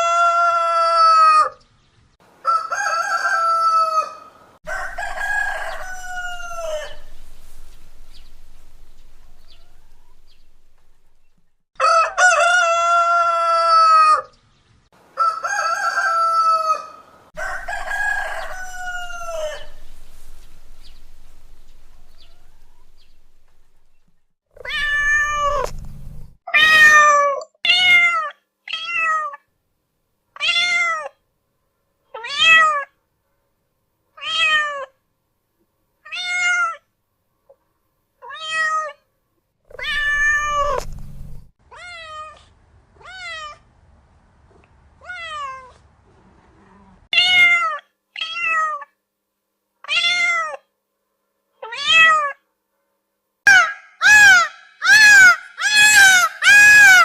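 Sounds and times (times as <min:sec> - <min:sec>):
rooster crowing: 0:02.4 - 0:14.3, 0:15.1 - 0:24.0, 0:24.6 - 0:26.2, 0:39.8 - 0:40.9
cat meowing: 0:24.6 - 0:29.4, 0:39.7 - 0:40.9, 0:41.7 - 0:43.6, 0:45.0 - 0:45.8, 0:47.2 - 0:49.0, 0:49.8 - 0:50.6, 0:51.6 - 0:52.4.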